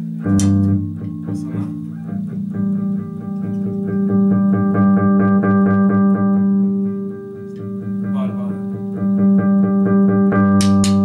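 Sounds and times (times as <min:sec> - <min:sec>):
keyboard playing sustained chords: 0:00.0 - 0:11.0.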